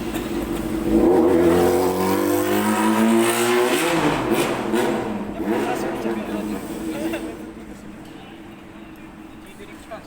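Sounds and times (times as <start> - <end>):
vehicle engine revving: 0.8 - 6.9.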